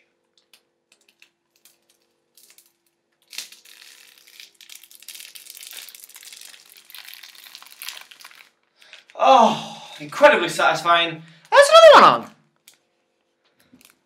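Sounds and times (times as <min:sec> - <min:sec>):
plastic film peeling crackle: 0:00.4 - 0:09.2, 0:13.6 - 0:14.0.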